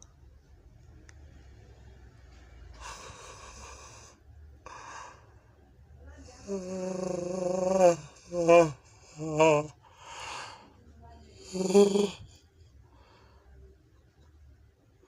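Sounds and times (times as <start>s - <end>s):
person yawning: 6.4s - 9.7s, 11.4s - 12.2s.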